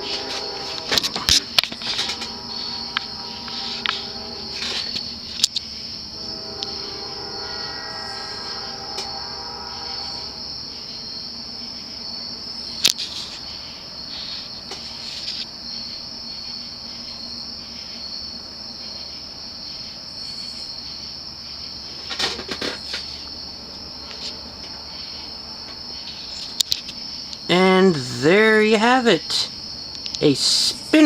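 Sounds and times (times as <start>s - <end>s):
insect chirring: 0.0s - 14.6s.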